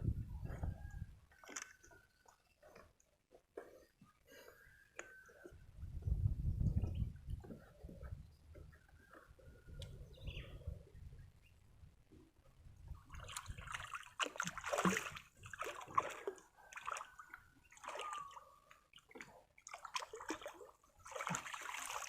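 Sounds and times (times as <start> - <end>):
water sloshing and splashing: 0.5 - 2.8, 12.9 - 22.0.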